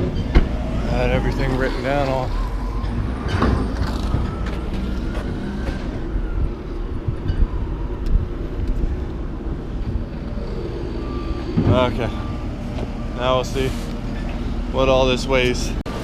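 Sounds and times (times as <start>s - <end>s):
vehicle engine idling: 0.0s - 16.0s
knocks and clatters: 2.9s - 6.1s.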